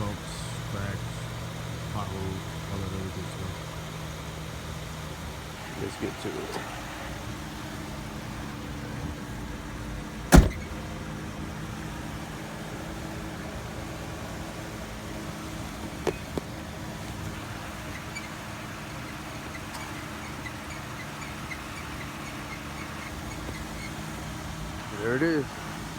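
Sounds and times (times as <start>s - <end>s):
car door shutting: 10.1s - 11.1s, 15.8s - 24.2s.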